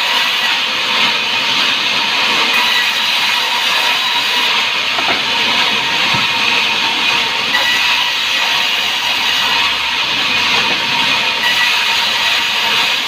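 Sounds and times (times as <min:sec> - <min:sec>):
sawmill rushing noise: 0:00.0 - 0:13.0.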